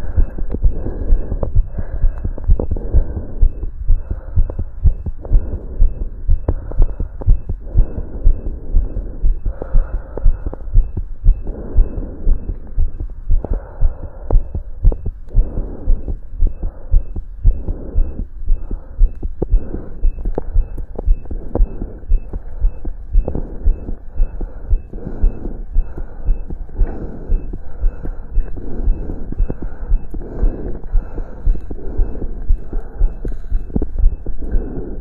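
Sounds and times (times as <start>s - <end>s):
heartbeat through stethoscope: 0.0s - 35.0s.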